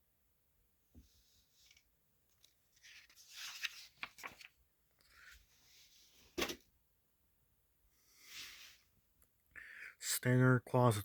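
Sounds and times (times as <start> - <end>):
paper pages rustling: 1.6 - 5.6.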